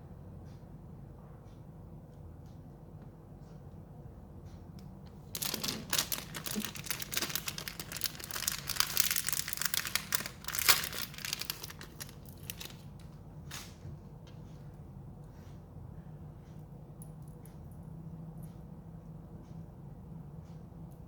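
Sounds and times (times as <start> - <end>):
packaging crinkling and tearing: 5.2 - 13.7.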